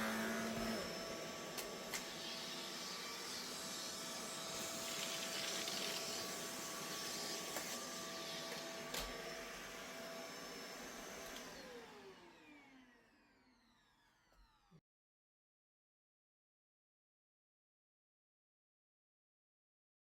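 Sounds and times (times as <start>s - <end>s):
vacuum cleaner motor: 0.0s - 14.8s.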